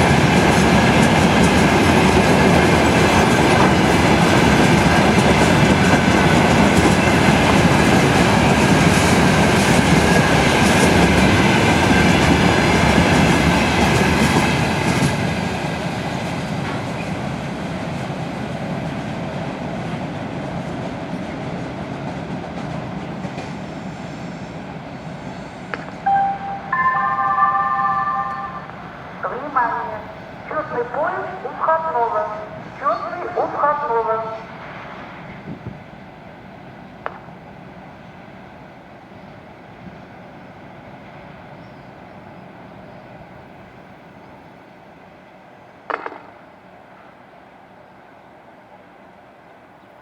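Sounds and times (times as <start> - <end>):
freight train rolling past: 0.0 - 50.0
short tone: 26.1 - 29.2.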